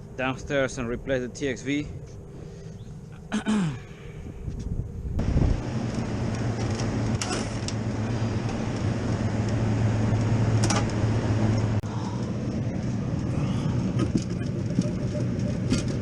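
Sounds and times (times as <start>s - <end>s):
machinery humming: 5.2s - 16.0s.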